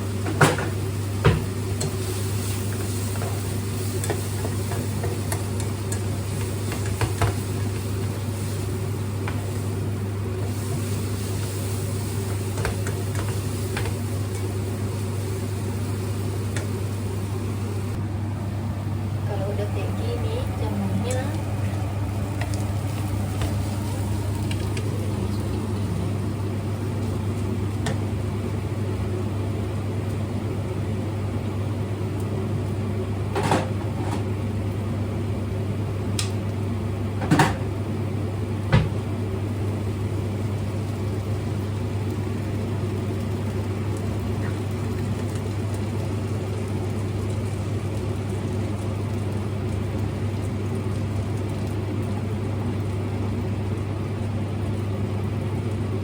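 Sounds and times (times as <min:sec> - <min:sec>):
kitchen appliance humming: 0:00.0 - 0:56.0.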